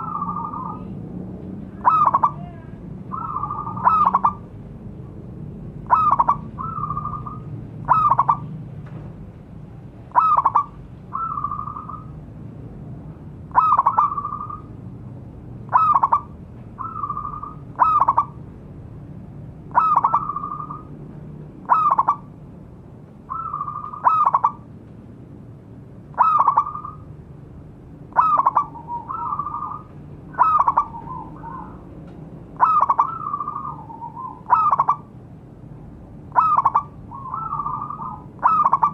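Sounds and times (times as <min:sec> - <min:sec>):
dove cooing call: 0:00.0 - 0:01.0, 0:01.8 - 0:04.5, 0:05.8 - 0:08.5, 0:10.1 - 0:12.2, 0:13.5 - 0:14.7, 0:15.7 - 0:18.4, 0:19.7 - 0:20.9, 0:21.6 - 0:22.3, 0:23.3 - 0:24.7, 0:26.1 - 0:27.1, 0:28.1 - 0:31.9, 0:32.6 - 0:35.2, 0:36.3 - 0:38.9.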